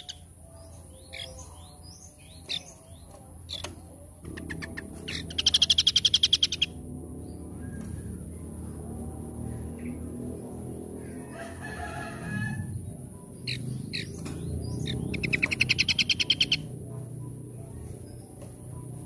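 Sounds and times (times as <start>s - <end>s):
songbirds chirping and trilling: 0.0s - 19.0s
low rumble: 4.2s - 19.0s.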